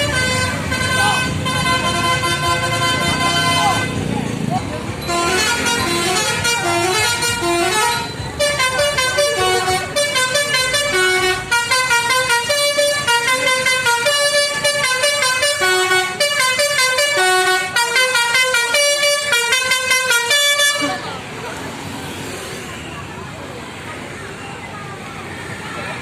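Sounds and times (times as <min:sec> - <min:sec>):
musical air horn tune: 0:05.0 - 0:21.0.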